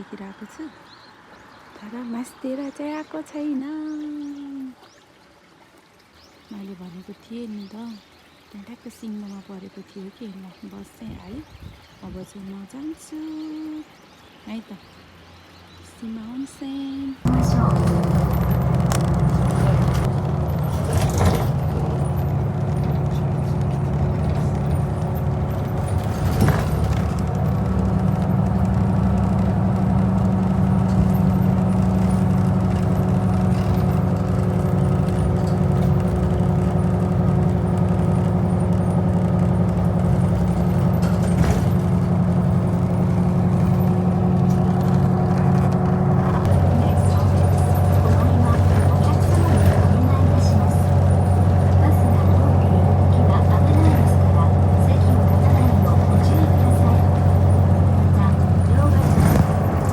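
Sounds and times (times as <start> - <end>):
bus engine running: 16.8 - 59.9
faint knocks and rattles: 17.3 - 59.9.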